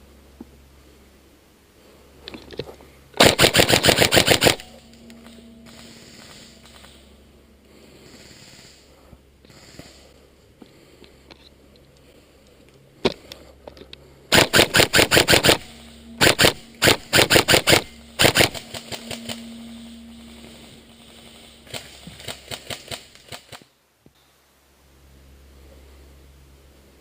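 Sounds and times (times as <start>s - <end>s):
airsoft guns firing rapidly: 3.2s - 4.6s, 14.3s - 15.6s, 16.2s - 18.6s.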